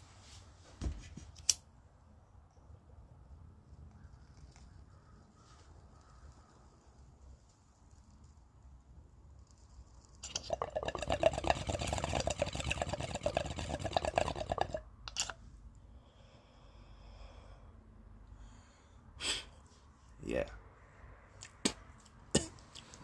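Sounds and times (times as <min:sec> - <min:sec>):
water bubbling in a bong: 0:10.2 - 0:14.9.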